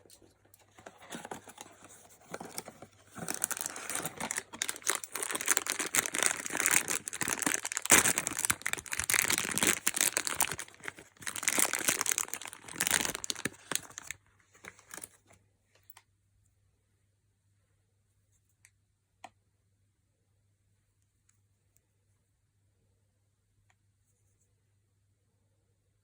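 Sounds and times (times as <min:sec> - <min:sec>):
packaging crinkling and rustling: 0:00.6 - 0:15.3.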